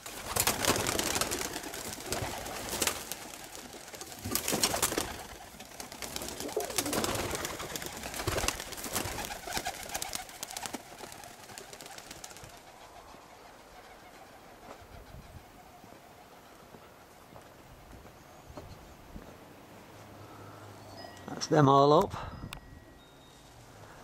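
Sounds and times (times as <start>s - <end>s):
pigeon wings flapping: 0.0s - 13.2s
pigeons cooing: 0.0s - 16.7s.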